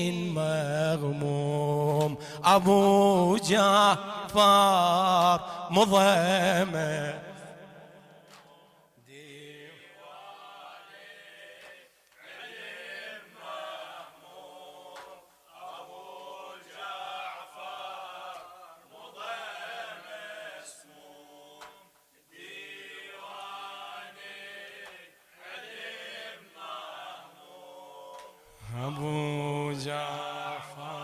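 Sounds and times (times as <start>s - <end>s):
lead reciter voice: 0.0s - 31.0s
men chanting in unison: 0.0s - 31.0s.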